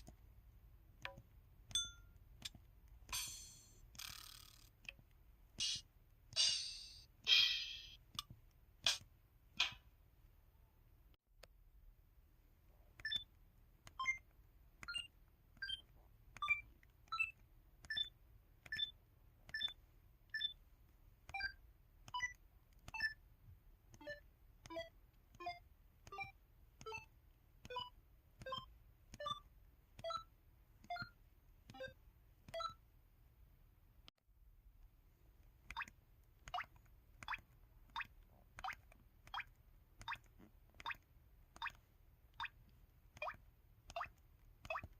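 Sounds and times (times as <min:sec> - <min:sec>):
phone keypad beeps: 0:14.8 - 0:18.1, 0:18.7 - 0:20.6, 0:24.0 - 0:29.4, 0:31.8 - 0:32.8.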